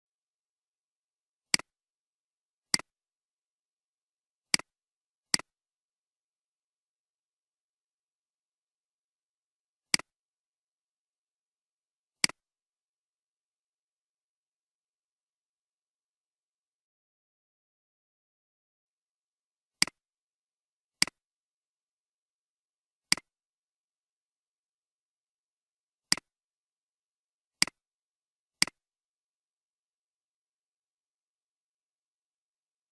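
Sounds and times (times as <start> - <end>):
computer mouse clicks: 12.2 - 12.4, 23.1 - 23.3, 26.1 - 26.3, 28.6 - 28.8.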